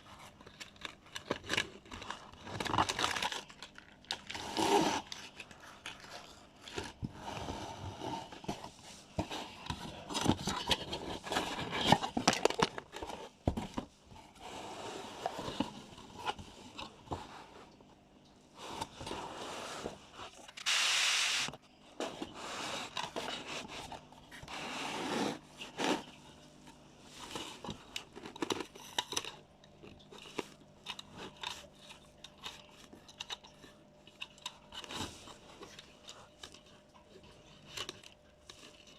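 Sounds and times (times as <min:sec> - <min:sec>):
packaging crinkling and rustling: 0:00.0 - 0:07.1, 0:08.3 - 0:13.9, 0:27.2 - 0:38.9.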